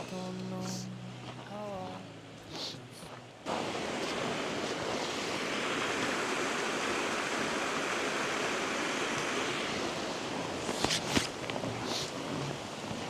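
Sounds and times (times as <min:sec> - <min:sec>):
water rushing down cascade: 0:03.5 - 0:13.0.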